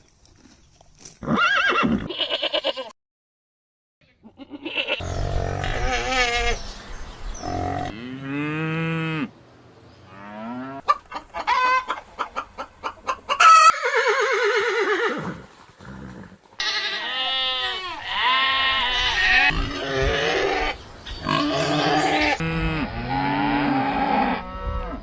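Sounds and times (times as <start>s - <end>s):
cow mooing: 7.6s - 9.3s
chickens clucking: 10.8s - 13.7s.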